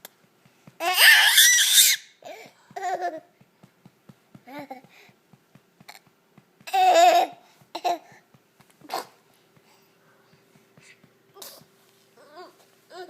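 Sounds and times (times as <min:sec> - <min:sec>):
baby's laughing squeal: 0:00.8 - 0:02.2.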